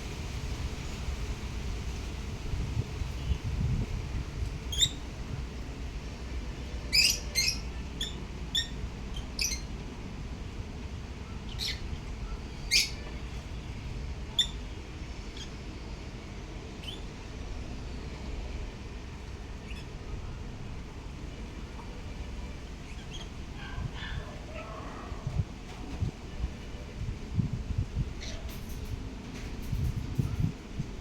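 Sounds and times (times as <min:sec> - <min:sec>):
low background rumble: 0:00.0 - 0:31.0
lovebirds chirping: 0:04.7 - 0:05.0, 0:06.9 - 0:09.7, 0:11.4 - 0:14.7, 0:22.8 - 0:23.4.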